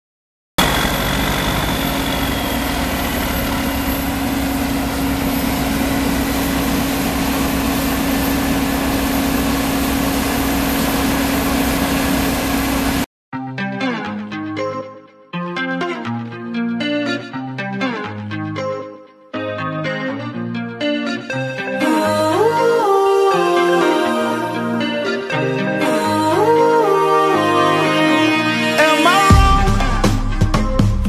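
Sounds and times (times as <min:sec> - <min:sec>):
heavy machine engine droning: 0:00.6 - 0:13.0.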